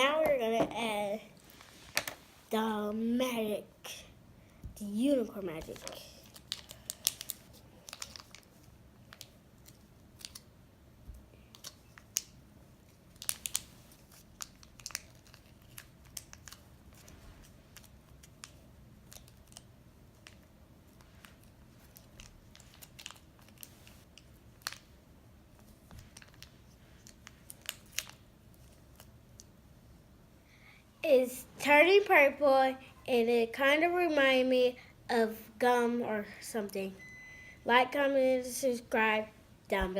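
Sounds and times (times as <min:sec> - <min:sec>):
slime clicks and crinkles: 0:05.6 - 0:10.5, 0:13.1 - 0:24.9, 0:26.0 - 0:29.6.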